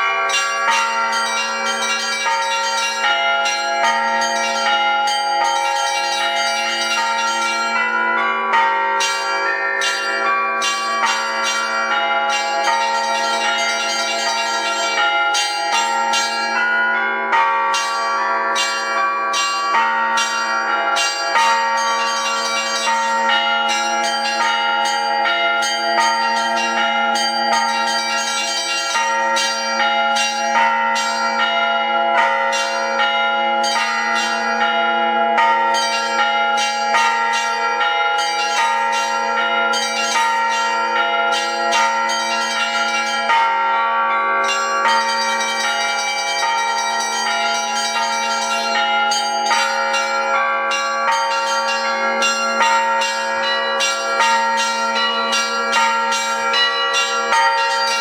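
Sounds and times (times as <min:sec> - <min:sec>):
church bells ringing: 0:00.0 - 0:58.0.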